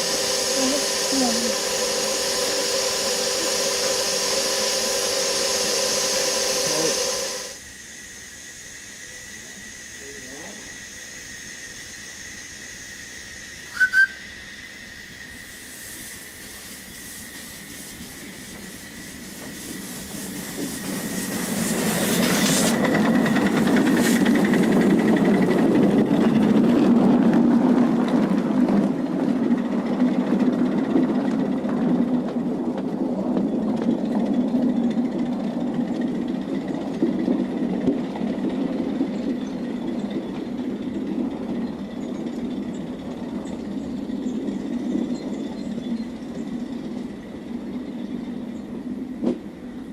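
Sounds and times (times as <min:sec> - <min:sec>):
miniature train running on track: 0:00.0 - 0:49.9
steam whistle toots: 0:13.6 - 0:14.4.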